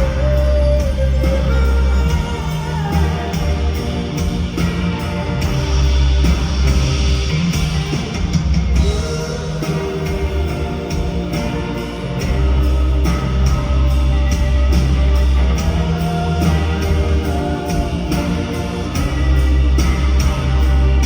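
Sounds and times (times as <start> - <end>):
rock band playing live: 0.0 - 21.0.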